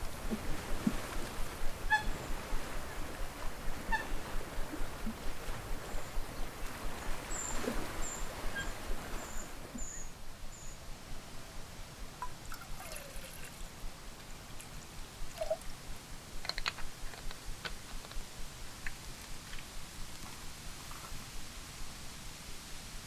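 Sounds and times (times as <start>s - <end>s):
water pouring and trickling: 12.2s - 13.6s, 14.6s - 15.7s
small clicks: 16.4s - 18.2s.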